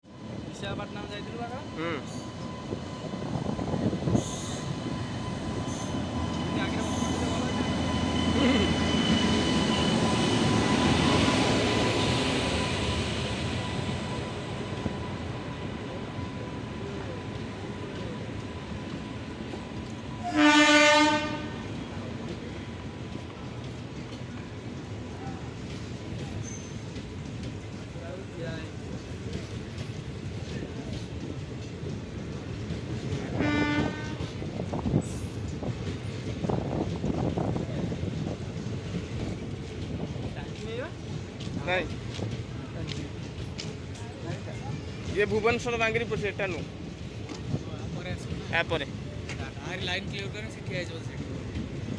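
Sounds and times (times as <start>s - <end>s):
train running on rails: 0.0s - 51.9s
train horn blast: 20.2s - 21.8s, 33.3s - 34.4s.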